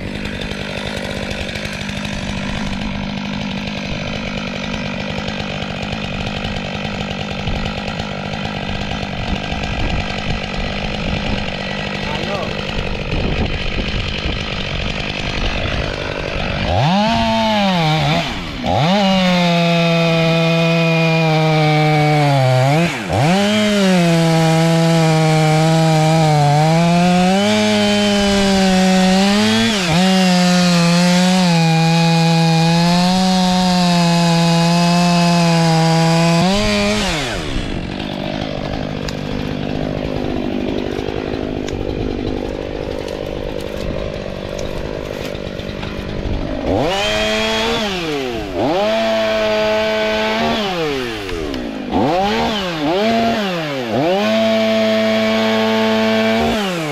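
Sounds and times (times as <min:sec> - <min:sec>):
chainsaw cutting wood: 0:00.0 - 0:56.9.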